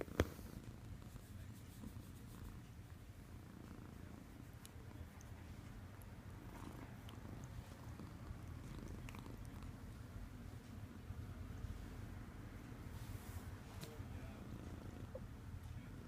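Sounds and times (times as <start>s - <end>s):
cat snoring softly: 3.3s - 4.5s, 6.3s - 9.9s, 14.1s - 15.3s.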